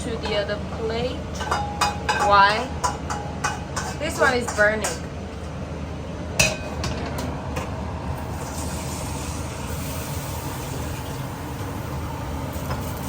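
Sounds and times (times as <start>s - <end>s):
utensil clanking against pan: 0.1s - 5.1s
food sizzling in a pan: 8.2s - 13.0s.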